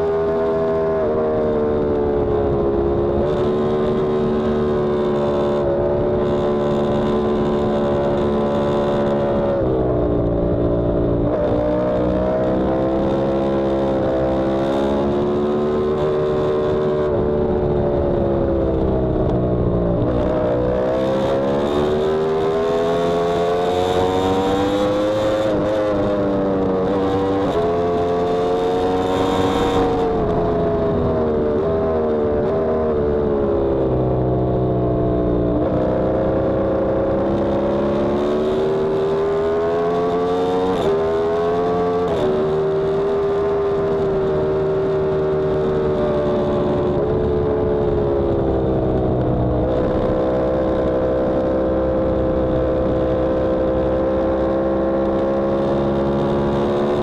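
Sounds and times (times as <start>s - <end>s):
motorcycle engine running hard: 0.0s - 57.0s
wind rumble: 15.6s - 57.0s.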